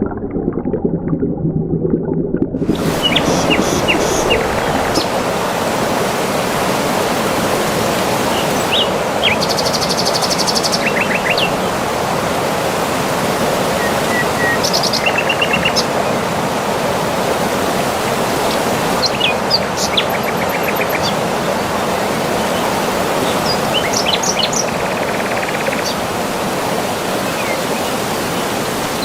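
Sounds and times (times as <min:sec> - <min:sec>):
waterfall rushing: 0:02.6 - 0:29.0
birds chirping: 0:02.7 - 0:05.4, 0:08.0 - 0:11.6.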